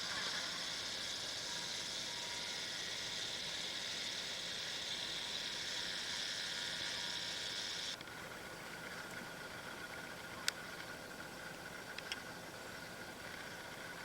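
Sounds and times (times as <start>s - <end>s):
loudspeaker radio hiss: 0.0s - 8.0s.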